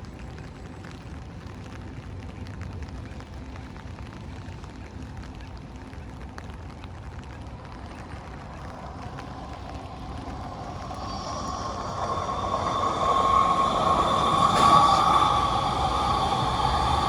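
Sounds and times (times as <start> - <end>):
vehicle approaching with whine: 7.4 - 17.0.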